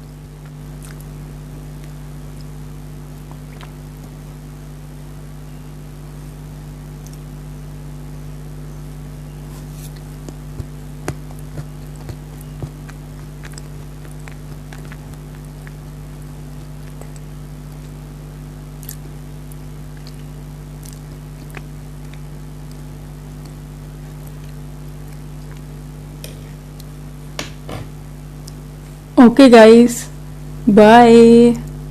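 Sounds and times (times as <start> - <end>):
low electrical hum: 0.0 - 31.9
chewing clicks: 0.4 - 1.1, 11.4 - 18.0, 18.8 - 26.9.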